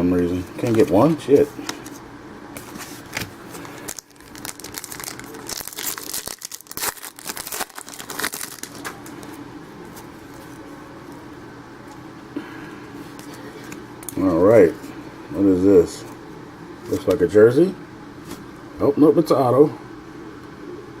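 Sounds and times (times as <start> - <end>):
faint steady hum: 0.0 - 21.0
card pack wrapper crinkling: 2.6 - 10.6.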